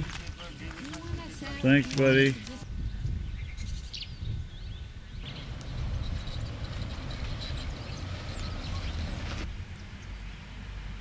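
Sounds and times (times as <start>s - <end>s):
small birds chirping: 2.2s - 10.6s
steady low rumble: 5.1s - 10.2s.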